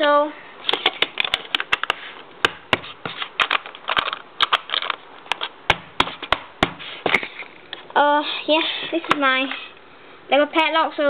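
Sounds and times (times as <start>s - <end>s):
plastic toy padlock rattling: 0.7s - 1.9s, 3.4s - 5.5s.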